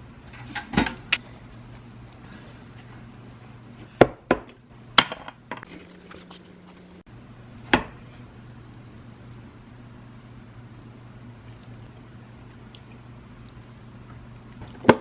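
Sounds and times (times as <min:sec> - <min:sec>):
low hum: 0:05.6 - 0:07.5.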